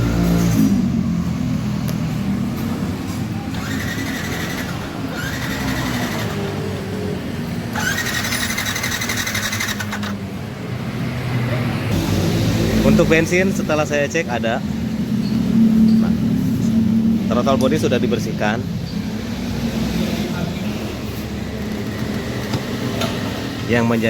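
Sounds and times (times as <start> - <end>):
scooter electric starter cranking: 3.5 - 6.7, 7.7 - 10.3.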